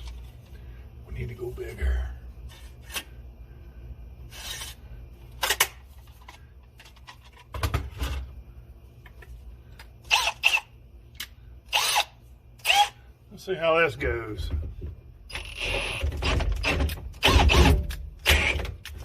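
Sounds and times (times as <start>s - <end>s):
low steady hum: 0.0s - 19.0s
drill bits clicking and rattling: 10.1s - 12.9s.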